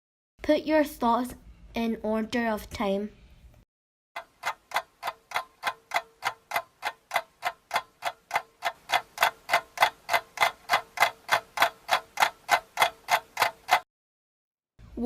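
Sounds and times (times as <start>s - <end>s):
rapid ticking: 4.2s - 13.8s.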